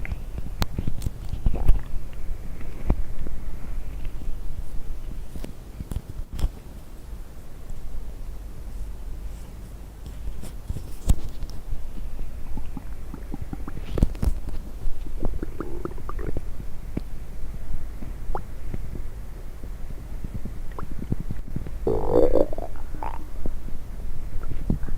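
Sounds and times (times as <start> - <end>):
stomach pops and clicks: 0.0 - 2.0, 12.6 - 16.4, 20.7 - 23.2
stomach gurgling: 0.7 - 2.0, 12.4 - 16.5, 20.4 - 23.5, 24.4 - 24.9.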